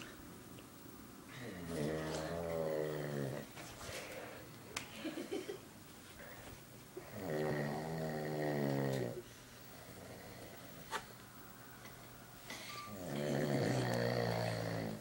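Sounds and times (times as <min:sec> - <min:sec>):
man snoring: 0:01.4 - 0:03.4, 0:07.0 - 0:09.2, 0:12.9 - 0:15.0.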